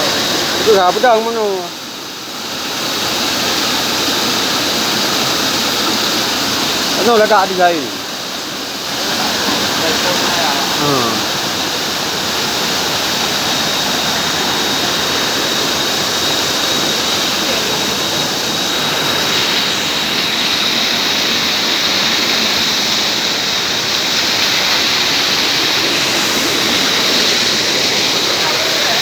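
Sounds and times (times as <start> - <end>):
waterfall roar: 0.0 - 29.0
thin high tone: 4.8 - 11.8.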